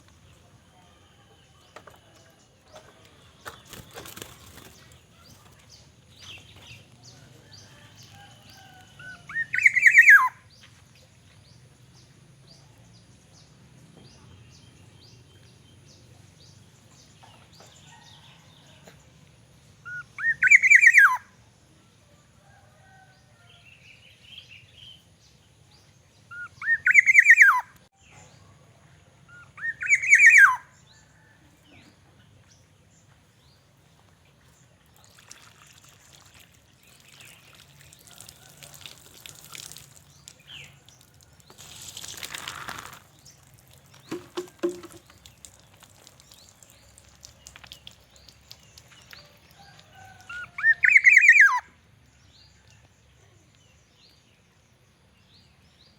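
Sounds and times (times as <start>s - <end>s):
bird slurred calls: 9.0s - 10.3s.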